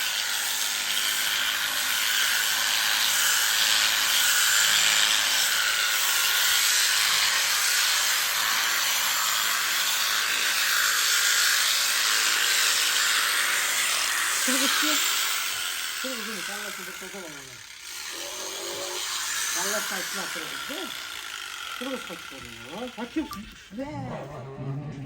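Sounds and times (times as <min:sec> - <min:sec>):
electric clippers running: 0:00.0 - 0:24.0.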